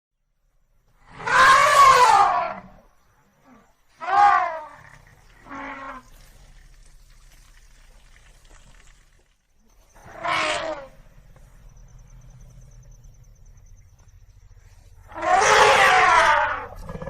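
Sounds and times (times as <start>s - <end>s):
elephant calling: 1.1s - 2.8s, 3.4s - 6.7s, 9.6s - 17.0s
faint low hum: 4.6s - 15.1s.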